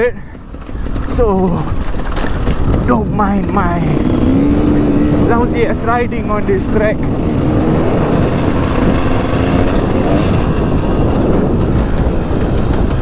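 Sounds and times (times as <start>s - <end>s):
dirt bike engine revving: 0.0s - 13.0s
wind buffeting microphone: 0.0s - 13.0s.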